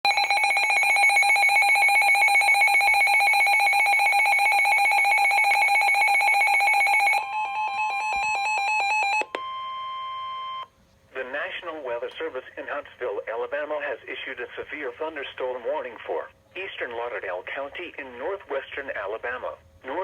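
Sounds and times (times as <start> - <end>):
pulsing electronic alarm tone: 0.1 - 10.7.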